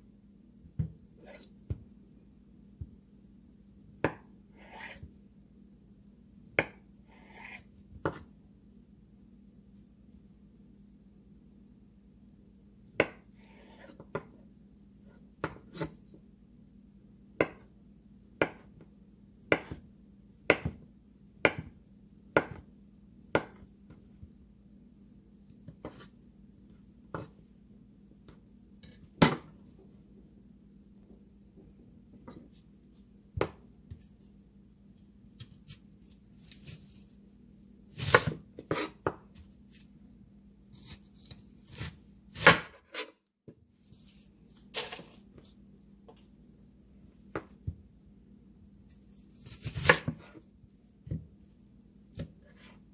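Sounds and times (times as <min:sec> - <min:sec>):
knife chopping on cutting board: 0:04.0 - 0:05.1, 0:15.4 - 0:16.0, 0:17.4 - 0:17.7, 0:18.4 - 0:18.8, 0:19.5 - 0:19.9, 0:20.5 - 0:20.8, 0:21.4 - 0:21.8, 0:22.4 - 0:22.7, 0:23.3 - 0:23.6, 0:27.1 - 0:27.4, 0:37.9 - 0:39.3, 0:40.8 - 0:43.1, 0:49.4 - 0:50.4.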